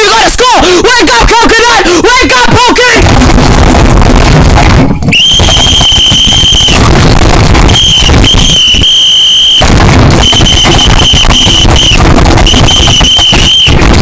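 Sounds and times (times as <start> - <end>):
loud distorted noise: 0.0 - 14.0
shrill alarm tone blasts: 5.1 - 14.0.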